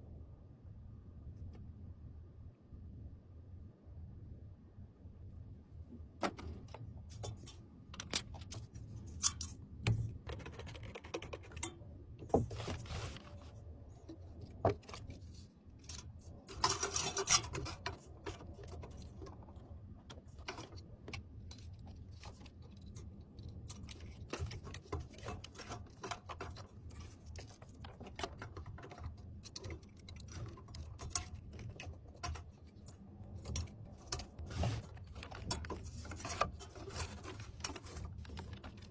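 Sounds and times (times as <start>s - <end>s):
computer parts clicking and tapping: 9.2s - 12.5s
scraping rub: 12.3s - 13.6s, 34.2s - 38.8s.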